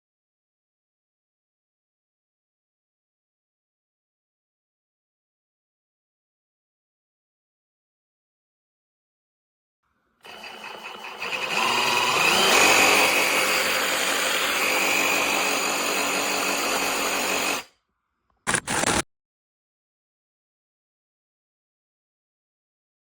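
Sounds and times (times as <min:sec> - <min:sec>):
reciprocating saw running: 0:10.2 - 0:17.7.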